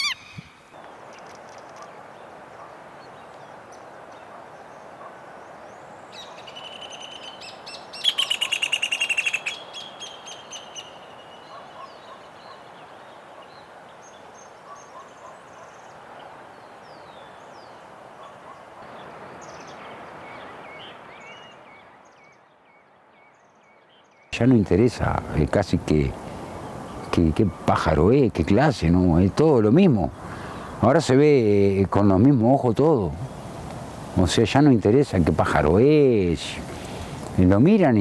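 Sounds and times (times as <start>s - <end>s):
bird alarm calls: 0.0s - 0.6s, 6.1s - 12.8s
outdoor hiss: 24.4s - 38.0s.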